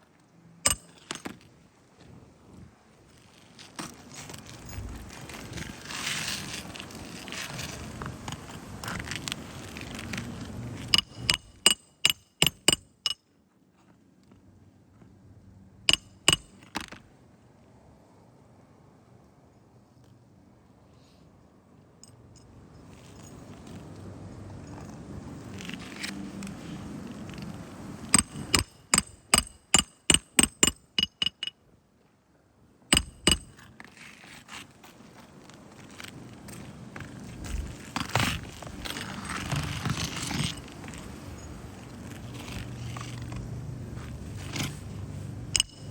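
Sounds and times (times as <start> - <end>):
hammer striking nails: 0.7 - 1.3, 10.9 - 13.2, 15.9 - 16.8, 28.1 - 31.5, 32.9 - 33.6, 45.6 - 45.9
scratchy rustling: 3.1 - 10.9, 33.9 - 45.3
hammer blows ringing: 45.6 - 45.9.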